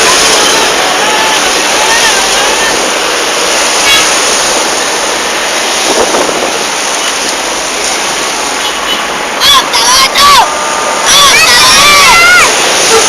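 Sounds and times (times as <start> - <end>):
wind noise on microphone: 0.0 - 9.4
road traffic passing: 0.0 - 13.0.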